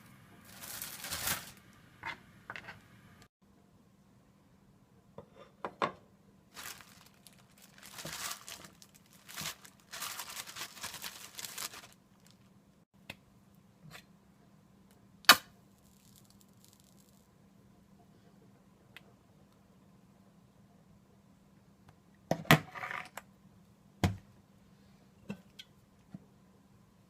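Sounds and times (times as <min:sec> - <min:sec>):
rustling and crinkling: 0:00.4 - 0:01.7, 0:06.5 - 0:12.5, 0:15.8 - 0:17.3.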